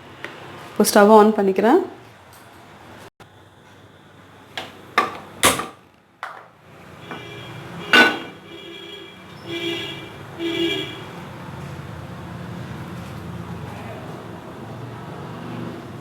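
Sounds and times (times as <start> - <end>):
stove switch clicks and knocks: 4.6 - 6.4.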